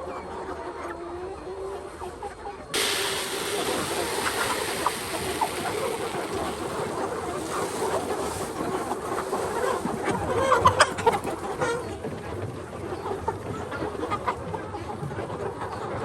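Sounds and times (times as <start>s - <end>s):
heavy rain: 2.8s - 8.8s.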